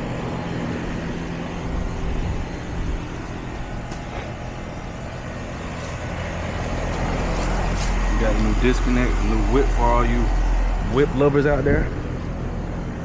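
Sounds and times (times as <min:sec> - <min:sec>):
compressor humming: 0:00.0 - 0:13.0
condenser fan rushing: 0:00.0 - 0:13.0.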